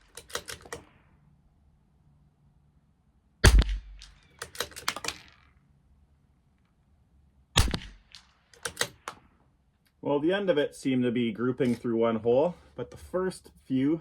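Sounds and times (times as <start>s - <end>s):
rifle bolt clicking: 0.0s - 0.9s, 3.5s - 5.4s, 8.6s - 9.2s
rifle shots: 3.4s - 5.4s, 7.6s - 9.3s.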